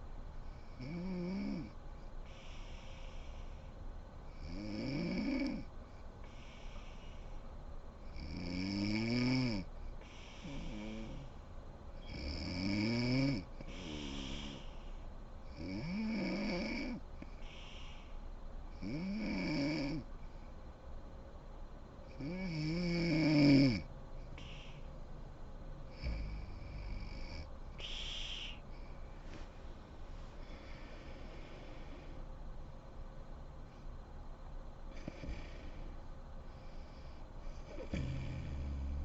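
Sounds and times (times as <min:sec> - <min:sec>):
quiet breaths: 0:00.0 - 0:39.0
woman snoring: 0:00.8 - 0:01.8, 0:04.4 - 0:05.6, 0:08.2 - 0:11.3, 0:12.0 - 0:14.8, 0:15.5 - 0:17.0, 0:18.8 - 0:20.1, 0:22.1 - 0:24.8, 0:25.9 - 0:28.6, 0:34.9 - 0:36.0, 0:37.6 - 0:39.0.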